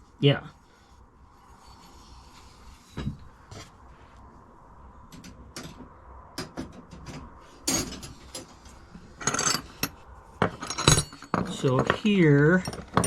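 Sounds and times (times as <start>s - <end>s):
metal wrenches clinking: 7.6s - 13.0s.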